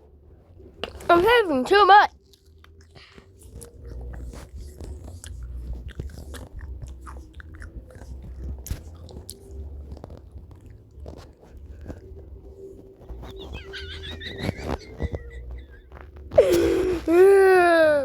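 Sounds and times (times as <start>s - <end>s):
mouth clicks and crackles: 0.7s - 17.8s
person laughing and wheezing: 13.2s - 18.0s.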